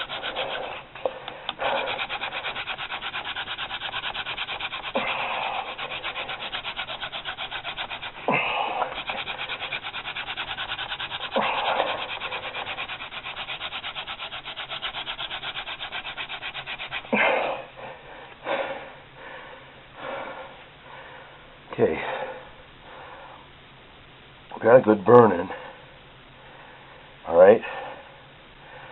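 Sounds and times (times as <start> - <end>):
wood-on-wood rubbing: 0.0 - 17.2.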